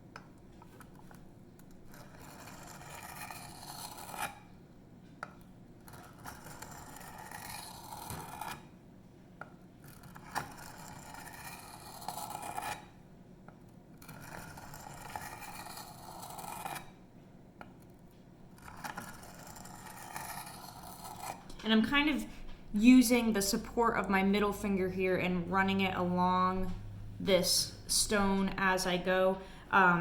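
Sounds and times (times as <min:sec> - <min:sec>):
knife scraping on sharpening stone: 0:01.9 - 0:04.4, 0:06.1 - 0:08.6, 0:10.0 - 0:12.9, 0:14.0 - 0:16.9, 0:18.6 - 0:21.4.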